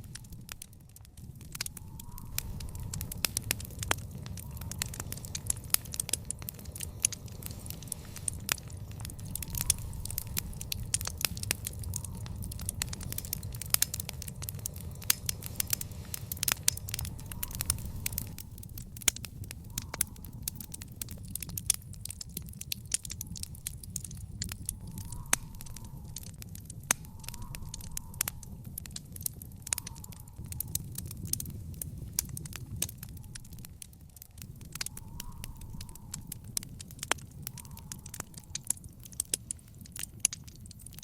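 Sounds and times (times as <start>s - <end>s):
low rumble: 0.0s - 29.7s
wood fire crackling and popping: 0.0s - 41.0s.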